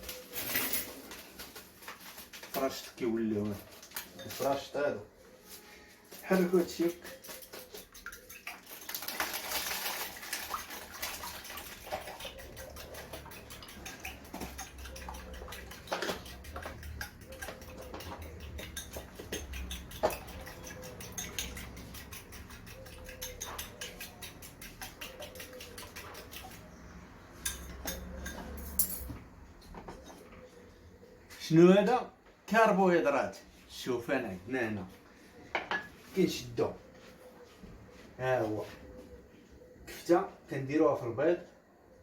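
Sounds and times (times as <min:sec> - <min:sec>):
utensil beating in a bowl: 0:06.4 - 0:08.7, 0:10.5 - 0:26.7.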